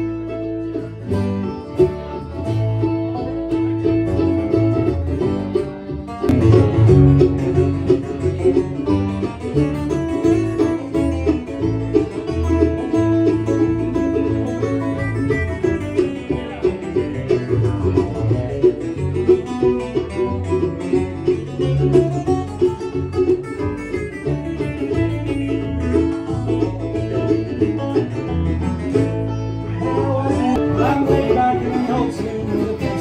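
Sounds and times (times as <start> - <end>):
banjo picking: 0.0 - 33.0
guitar: 0.0 - 33.0
steady bass line: 0.0 - 33.0.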